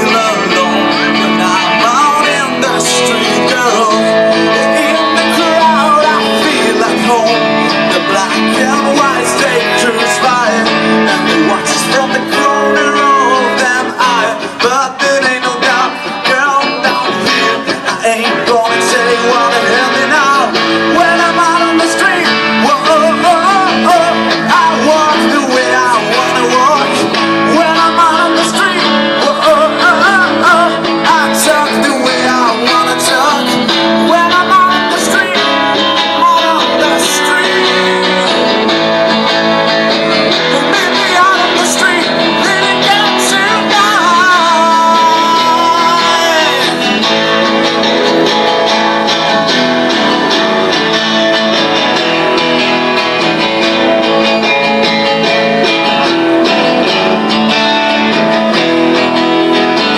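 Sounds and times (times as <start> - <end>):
acoustic guitars strummed: 0.0 - 59.9
person singing: 0.0 - 59.9.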